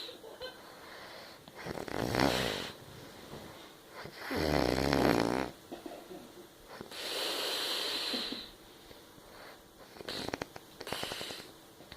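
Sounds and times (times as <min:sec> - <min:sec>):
person snoring: 0:01.6 - 0:02.8, 0:04.2 - 0:05.6
snorting throat sounds: 0:01.6 - 0:02.8, 0:04.0 - 0:05.6, 0:09.8 - 0:11.5
person breathing noisily: 0:06.8 - 0:08.6.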